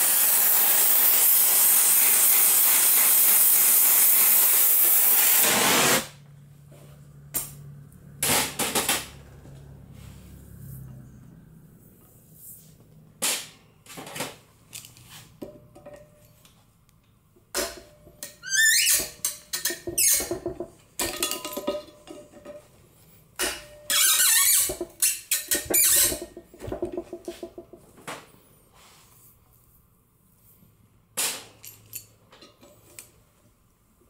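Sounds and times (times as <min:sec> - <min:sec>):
metal clanking and scraping: 0:17.5 - 0:28.0
metal knocks: 0:19.0 - 0:22.7, 0:24.7 - 0:28.0
metal squeals: 0:23.8 - 0:26.5.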